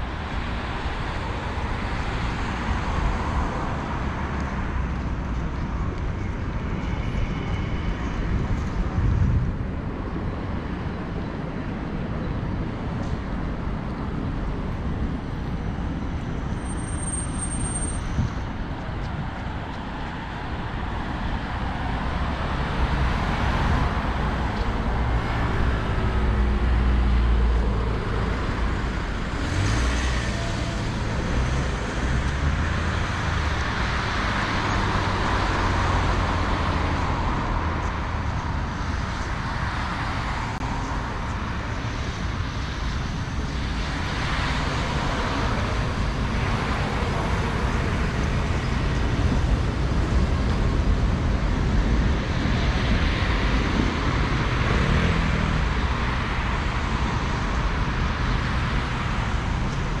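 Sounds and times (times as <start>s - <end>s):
engines rumbling: 0.0s - 60.0s
vehicles passing: 0.0s - 60.0s.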